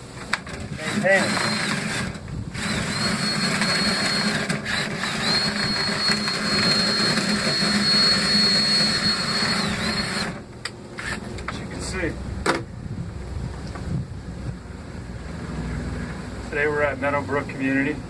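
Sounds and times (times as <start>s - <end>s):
cleaning tool motor whining: 0.5s - 11.2s.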